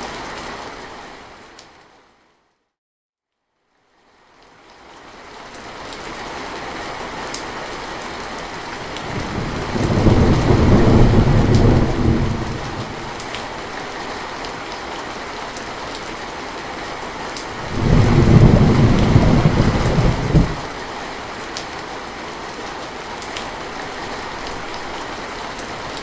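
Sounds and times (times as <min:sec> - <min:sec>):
steady rain: 0:00.0 - 0:02.4, 0:03.7 - 0:26.0
thunder rumble: 0:08.7 - 0:13.9, 0:17.6 - 0:20.8
raindrop ticks: 0:08.8 - 0:13.6, 0:17.3 - 0:20.7.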